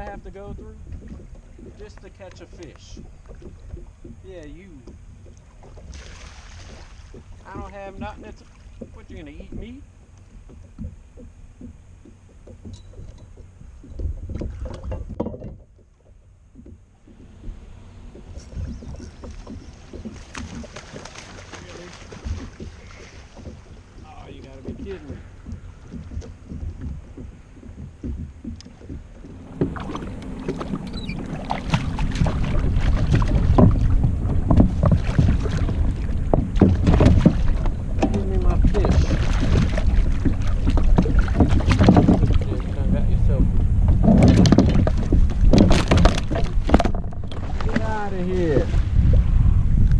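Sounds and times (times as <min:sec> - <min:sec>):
knocks and bumps on a kayak: 0:00.0 - 0:49.9
low rumble: 0:10.7 - 0:49.9.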